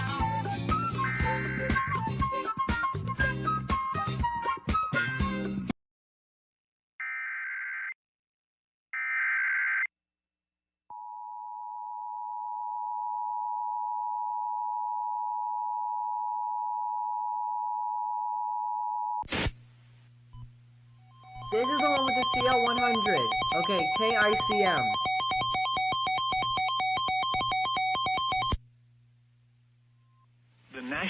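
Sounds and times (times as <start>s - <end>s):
two-tone attention signal: 21.2s - 28.5s.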